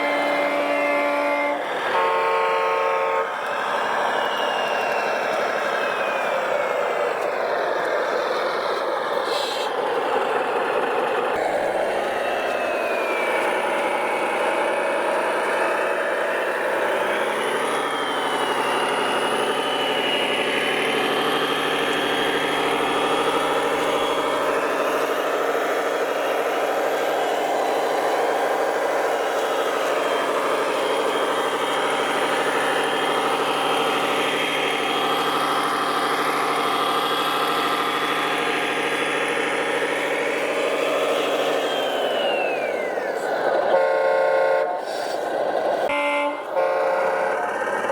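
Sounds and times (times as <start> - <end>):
radio-controlled truck engine drone: 0.0 - 47.9.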